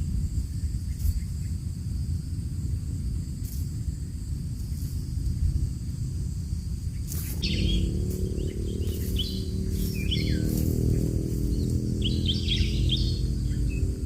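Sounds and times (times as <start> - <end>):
steady low rumble: 0.0 - 14.0
songbirds chirping: 3.8 - 14.0.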